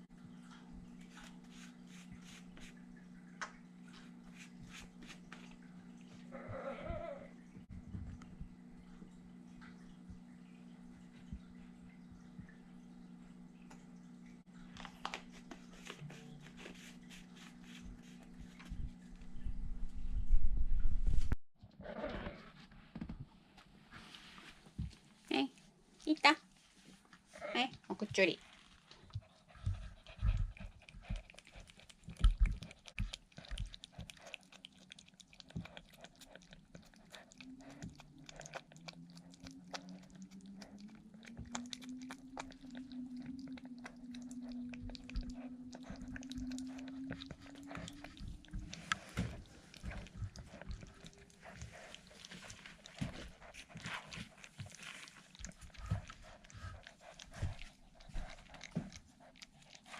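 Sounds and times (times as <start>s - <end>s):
faint rising hum: 0.0s - 21.4s, 28.4s - 59.9s
cat chewing and licking: 0.2s - 7.0s, 14.6s - 19.5s, 28.2s - 59.9s.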